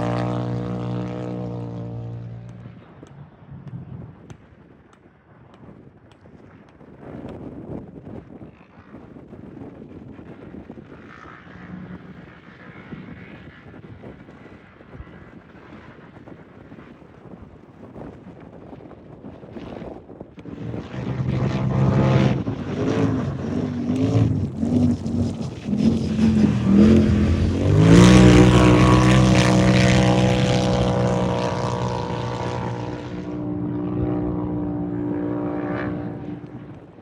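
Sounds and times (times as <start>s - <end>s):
engine revving hard: 20.5s - 36.7s.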